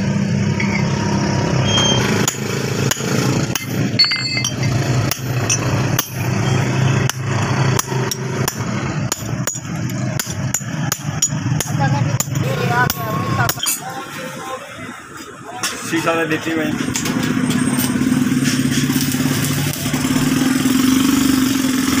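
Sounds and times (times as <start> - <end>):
hammer striking steel on anvil: 1.7 - 6.4, 7.0 - 13.8.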